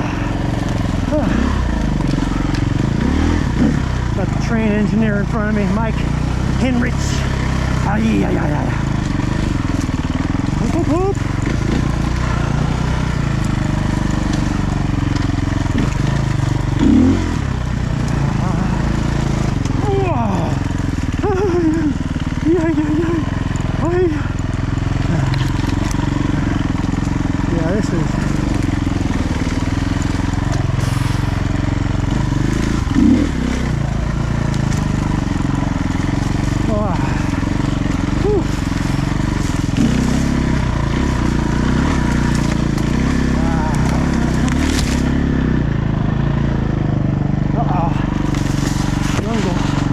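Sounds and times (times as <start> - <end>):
motorcycle engine running: 0.0 - 49.9.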